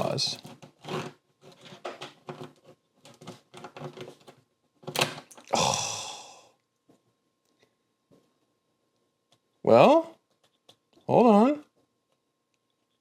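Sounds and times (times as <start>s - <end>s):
sigh-like breath: 5.5s - 6.6s.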